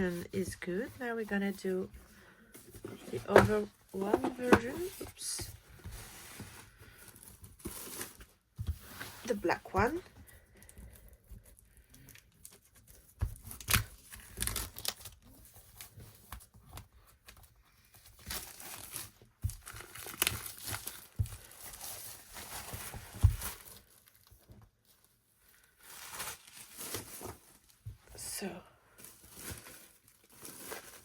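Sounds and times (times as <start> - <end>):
packaging tearing and crinkling: 13.4 - 15.2, 18.3 - 24.3, 29.0 - 31.0.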